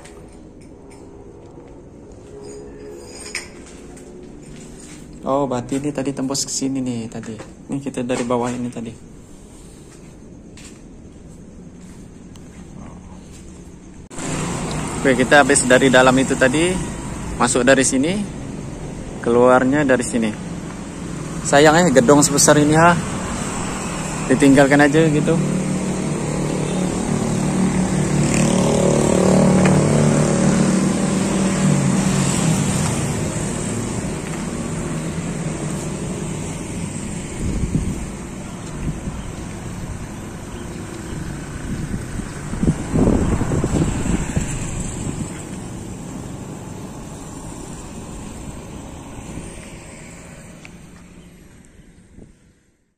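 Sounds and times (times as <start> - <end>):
low rumbling outdoor noise: 0.0 - 52.9
vehicle engine passing by: 14.1 - 52.3.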